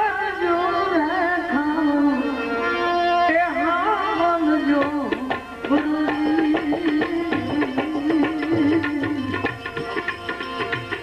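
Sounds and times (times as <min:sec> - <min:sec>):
devotional melody: 0:00.0 - 0:11.0
tabla strokes: 0:03.3 - 0:11.0.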